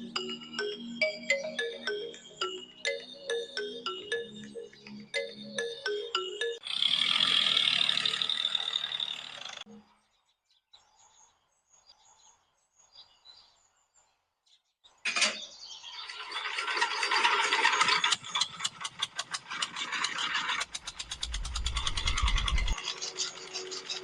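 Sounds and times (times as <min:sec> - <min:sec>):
machine mechanism starting loudly: 0:06.6 - 0:09.7, 0:16.0 - 0:24.0
fast clicking rattle: 0:16.0 - 0:24.0.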